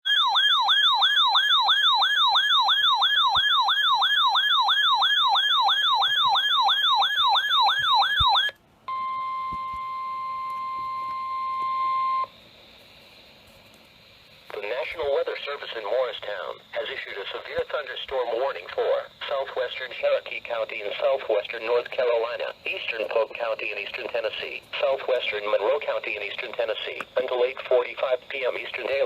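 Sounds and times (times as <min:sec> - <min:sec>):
falling whoop siren: 0:00.1 - 0:08.5
steady alarm tone: 0:00.1 - 0:12.4.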